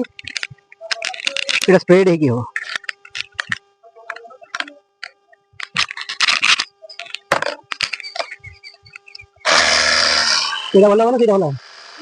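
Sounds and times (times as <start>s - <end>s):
plastic parts clicking and scraping: 0.0s - 1.8s, 2.5s - 9.4s.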